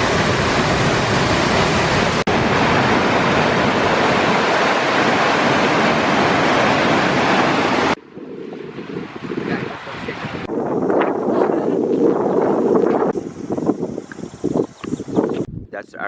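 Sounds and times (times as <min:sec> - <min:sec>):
waterfall rushing: 0:00.0 - 0:08.0.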